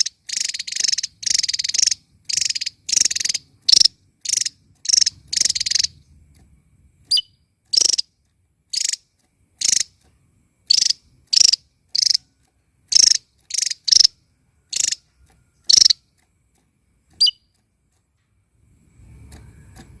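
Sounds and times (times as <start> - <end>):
songbird buzzy calls: 0.0 - 6.1, 7.0 - 10.0, 10.6 - 16.1, 17.1 - 17.5
high falling bird chirps: 0.0 - 6.2, 7.0 - 10.0, 10.6 - 16.1.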